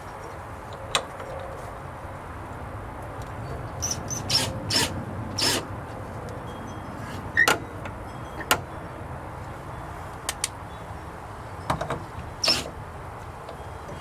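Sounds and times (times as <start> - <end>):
latch scraping: 11.8 - 12.8.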